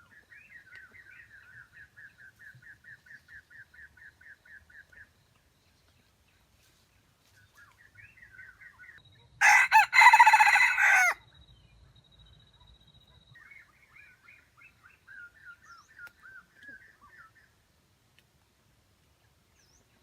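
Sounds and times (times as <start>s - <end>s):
rooster crowing: 9.4s - 11.2s
small birds chirping: 11.5s - 20.0s.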